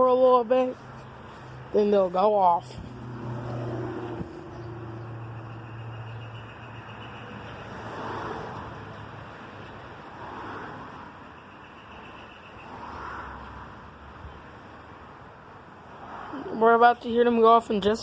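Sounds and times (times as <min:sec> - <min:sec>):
cars passing: 0:00.0 - 0:18.0
low engine hum: 0:00.8 - 0:07.6.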